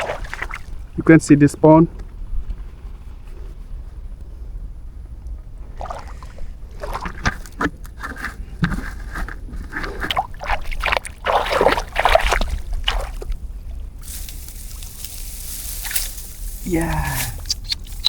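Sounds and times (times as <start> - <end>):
water splashing and sloshing: 0.0 - 1.0, 5.5 - 18.0
low steady rumble: 0.2 - 10.4, 11.8 - 18.0.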